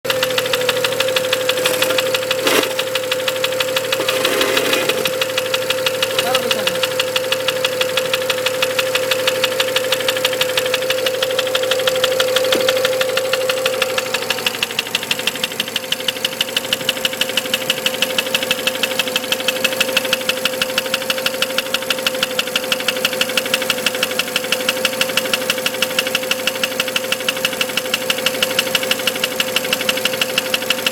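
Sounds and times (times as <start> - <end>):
engine knocking with sharp ticks: 0.0 - 30.9
engine hum: 0.3 - 17.8.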